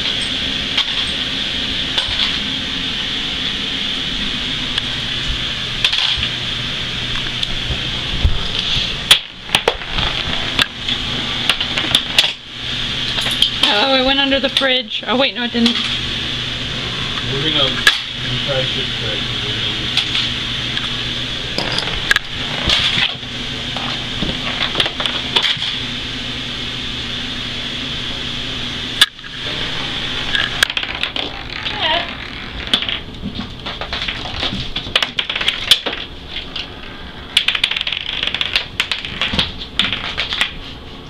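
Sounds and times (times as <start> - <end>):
steady hum: 0.0 - 41.0
marbles rolling on hard floor: 30.3 - 33.0, 33.8 - 36.0, 37.4 - 40.4.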